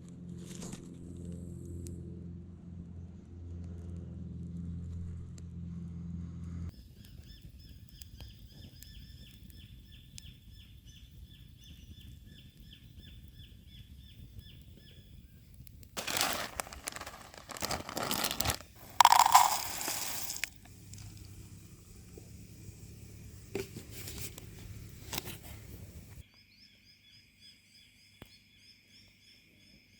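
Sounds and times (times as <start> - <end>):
crinkling and crumpling: 16.0 - 21.3.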